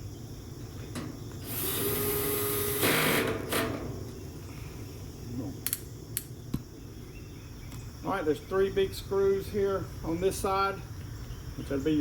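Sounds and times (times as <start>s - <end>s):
cordless drill driving screw: 1.4s - 3.2s.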